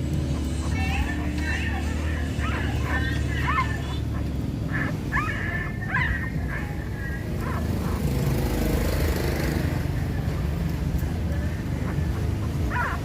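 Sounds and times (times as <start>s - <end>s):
puppies squealing: 0.1s - 8.4s, 11.7s - 13.0s.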